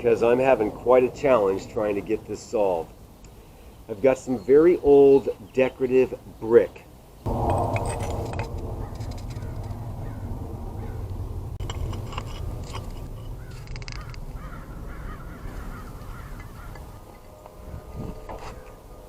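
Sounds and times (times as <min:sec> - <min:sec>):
steady low rumble: 0:07.3 - 0:14.9
birds calling: 0:07.3 - 0:17.1.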